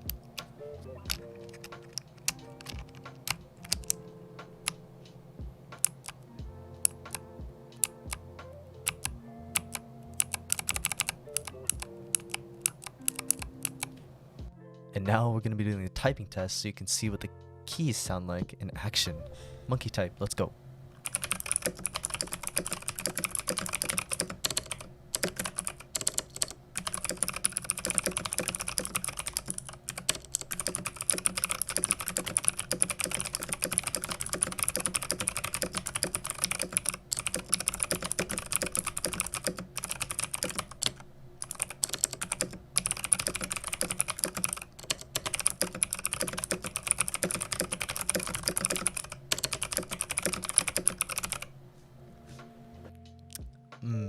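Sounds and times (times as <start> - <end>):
fast keyboard typing clicks: 1.1 - 4.0, 5.8 - 6.2, 6.9 - 8.2, 8.8 - 13.9, 21.0 - 51.5.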